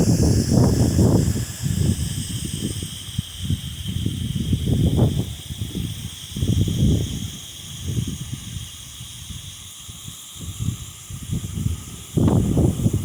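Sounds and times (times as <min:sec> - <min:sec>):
steady hiss: 0:00.0 - 0:13.0
wind buffeting microphone: 0:00.0 - 0:13.0.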